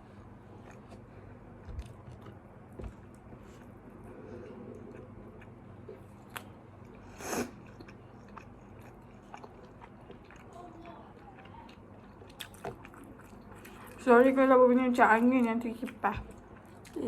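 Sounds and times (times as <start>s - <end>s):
electric fan hum: 0.0s - 17.0s
chewing and biting food: 0.5s - 2.4s, 4.5s - 14.0s.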